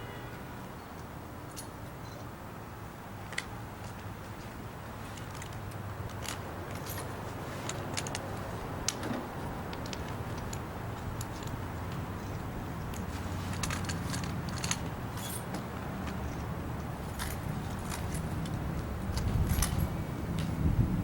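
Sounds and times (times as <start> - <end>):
light clicks and clinks: 12.2 - 16.4, 17.1 - 20.0.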